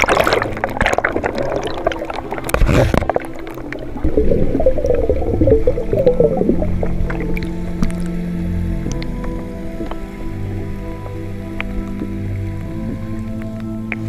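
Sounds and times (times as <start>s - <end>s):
bubbling water gurgle: 0.0s - 10.0s.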